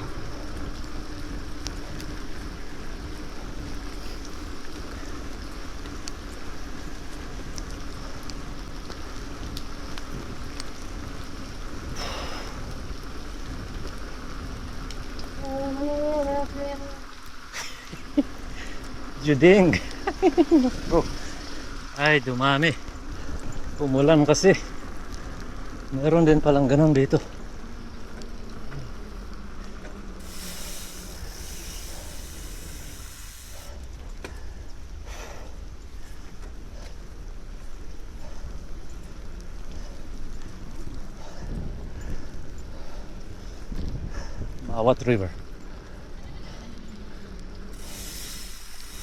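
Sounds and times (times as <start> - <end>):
low wind rumble: 0.0 - 17.2, 18.2 - 49.0
rain-like hiss: 0.0 - 49.0
stream water rushing: 30.2 - 33.7, 47.8 - 49.0
short burst of noise: 30.2 - 33.8, 47.8 - 49.0.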